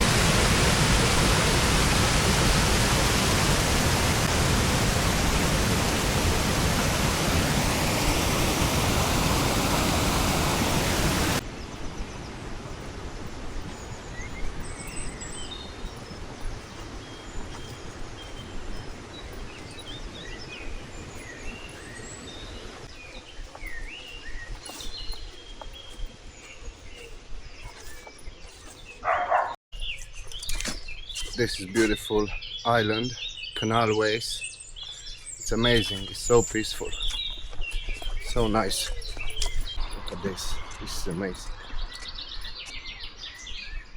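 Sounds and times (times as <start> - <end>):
loud steady rushing noise: 0.0 - 15.0
small birds chirping and singing: 7.2 - 43.9.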